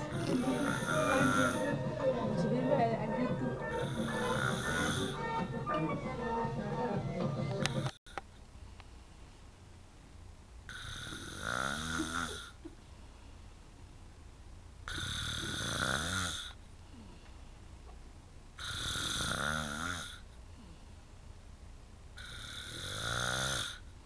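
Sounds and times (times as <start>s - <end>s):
man snoring: 0.0s - 1.8s, 3.6s - 5.4s, 7.6s - 8.0s, 10.7s - 12.6s, 14.9s - 17.1s, 18.6s - 20.2s, 22.2s - 23.8s.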